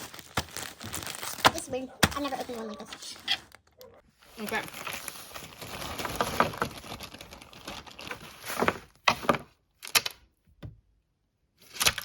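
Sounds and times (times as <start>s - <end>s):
package rustling: 0.0s - 9.0s
packaging crackling: 0.0s - 9.0s.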